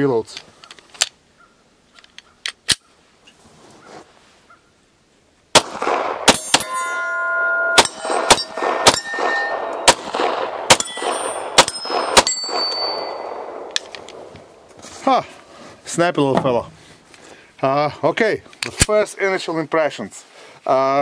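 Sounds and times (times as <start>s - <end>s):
pistol shots: 5.5s - 7.0s, 7.7s - 14.3s
metallic ringing: 6.3s - 13.7s.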